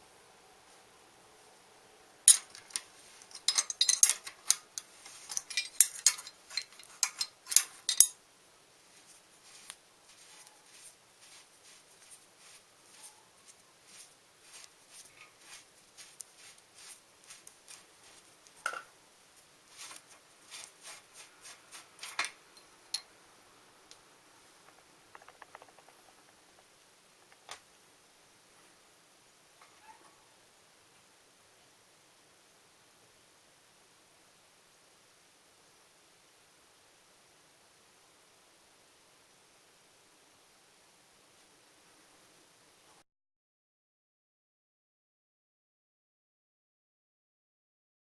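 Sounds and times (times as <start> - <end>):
metal tools clinking: 2.3 - 8.2, 22.0 - 23.1.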